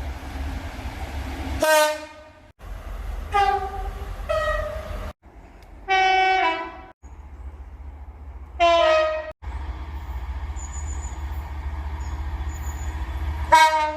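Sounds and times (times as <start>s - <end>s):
low rumble of trains: 0.0s - 13.9s
two-tone train horns: 1.6s - 2.5s, 3.3s - 5.1s, 5.9s - 6.9s, 8.6s - 9.3s, 13.4s - 13.9s.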